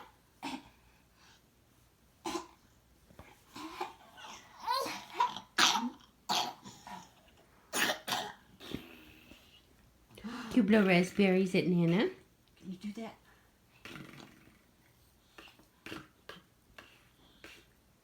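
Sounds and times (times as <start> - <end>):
cough-like mouth noises: 0.4 - 0.8, 2.2 - 2.6, 3.5 - 9.1, 15.4 - 16.5
baby cooing: 3.6 - 6.0.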